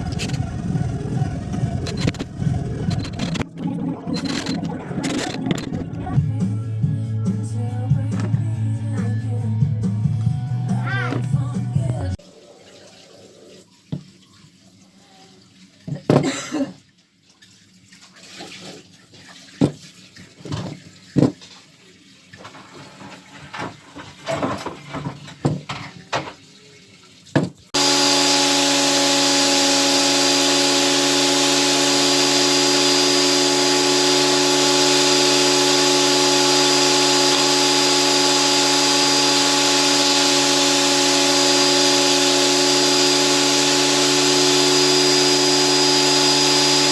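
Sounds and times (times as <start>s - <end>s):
power tool running: 0.0s - 3.4s, 27.8s - 46.9s.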